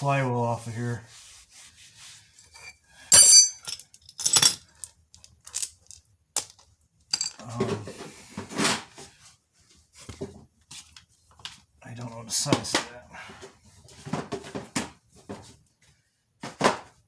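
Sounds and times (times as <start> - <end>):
steel hand tools clinking: 2.6 - 4.7.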